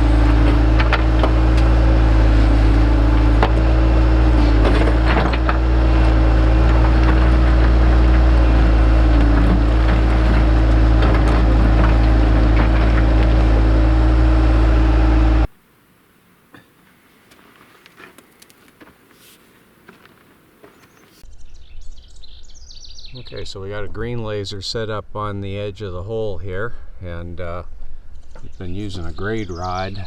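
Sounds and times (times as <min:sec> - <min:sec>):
digging machine engine running: 0:00.0 - 0:15.5.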